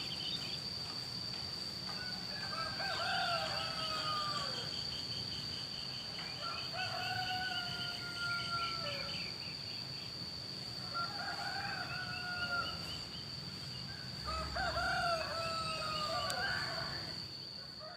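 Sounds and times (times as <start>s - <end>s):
roosters crowing: 1.9s - 5.0s, 6.2s - 9.4s, 10.7s - 17.9s.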